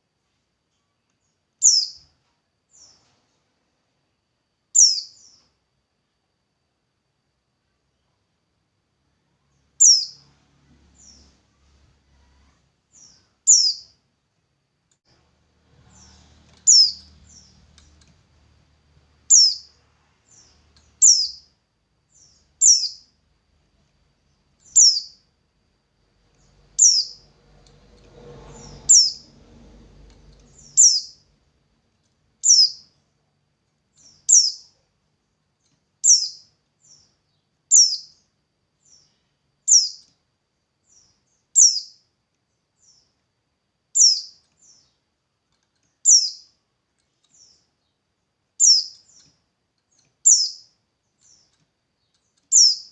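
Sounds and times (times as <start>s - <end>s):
songbird calling: 1.6s - 2.1s, 4.7s - 5.5s, 9.8s - 10.3s, 12.1s - 14.0s, 15.9s - 17.6s, 19.3s - 21.5s, 22.1s - 23.1s, 24.6s - 25.2s, 26.4s - 27.3s, 28.6s - 29.2s, 30.5s - 31.2s, 32.4s - 32.9s, 34.0s - 34.8s, 36.0s - 40.1s, 40.8s - 42.0s, 44.0s - 45.0s, 46.0s - 46.6s, 48.6s - 49.3s, 50.2s - 51.6s, 52.5s - 52.9s.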